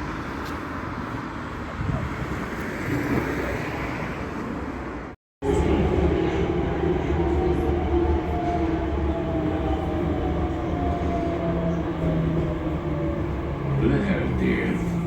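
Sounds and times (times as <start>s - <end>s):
electric train rumbling: 5.4s - 15.0s.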